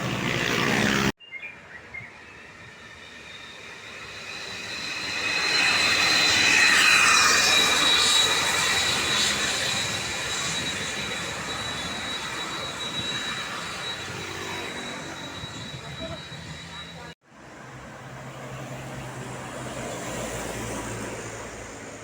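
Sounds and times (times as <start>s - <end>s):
thin high whine: 2.4s - 17.2s
bus passing at speed: 16.7s - 22.0s.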